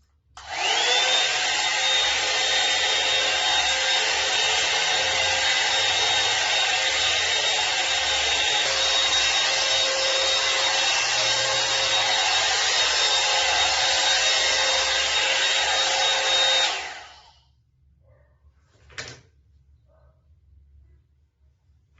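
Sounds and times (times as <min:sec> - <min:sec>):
hot air brush dryer blowing: 0:00.4 - 0:17.4.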